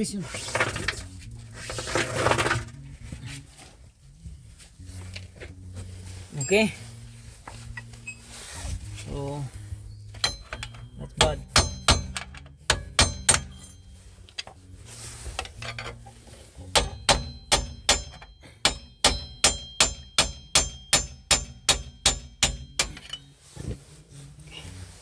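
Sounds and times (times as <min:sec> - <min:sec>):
hammer striking steel wheel hub: 0:10.2 - 0:14.2, 0:15.3 - 0:16.1, 0:16.7 - 0:23.4.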